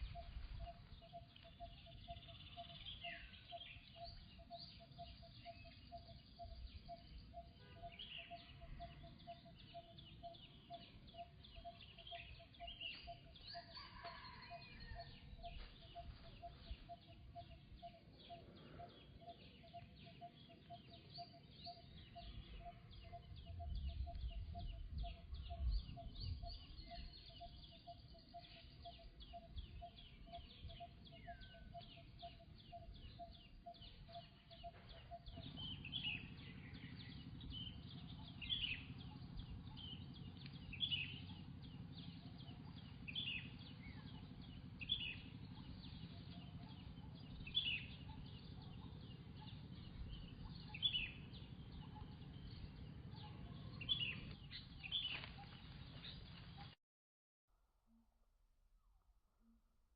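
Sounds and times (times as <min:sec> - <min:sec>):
birds chirping: 0:00.0 - 0:56.8
low rumble: 0:18.9 - 0:56.7.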